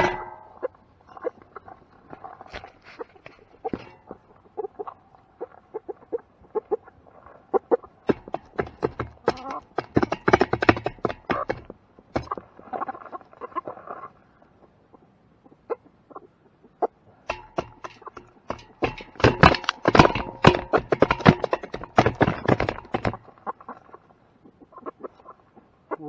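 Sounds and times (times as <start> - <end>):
knocks and clatter: 0.0 - 0.6, 2.5 - 4.1, 8.1 - 12.4, 17.3 - 23.3
chickens clucking: 0.0 - 26.0
farm animals calling: 23.3 - 26.0.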